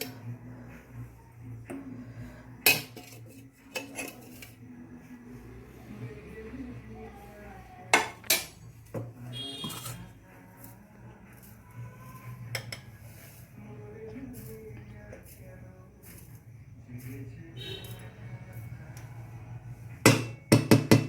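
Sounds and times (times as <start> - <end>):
kitchen utensils clinking: 2.6 - 4.7, 7.9 - 10.7, 11.3 - 13.4, 17.0 - 18.7.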